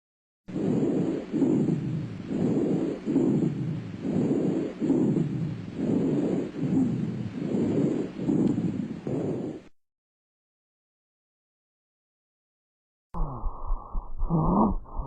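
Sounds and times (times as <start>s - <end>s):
breath sounds through stethoscope: 0.5s - 9.7s, 13.2s - 15.0s.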